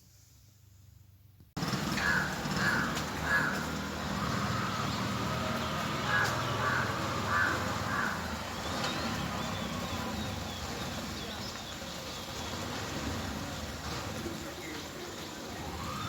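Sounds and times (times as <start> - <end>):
bird cawing: 1.6 - 9.7.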